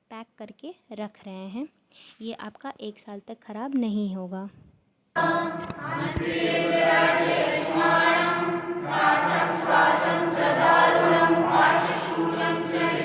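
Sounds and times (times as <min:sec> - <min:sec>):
choir singing long notes: 0:05.2 - 0:13.0.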